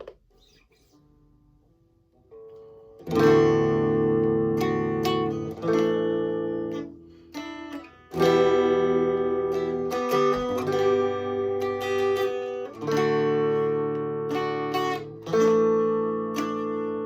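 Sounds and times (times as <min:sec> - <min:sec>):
electric guitar strumming chords: 0:02.2 - 0:17.0.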